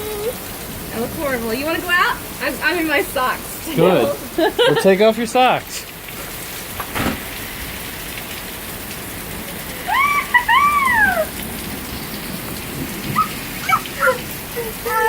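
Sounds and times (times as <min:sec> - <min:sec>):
heavy rain pouring: 0:00.0 - 0:15.0
high-pitched calls: 0:09.9 - 0:15.0.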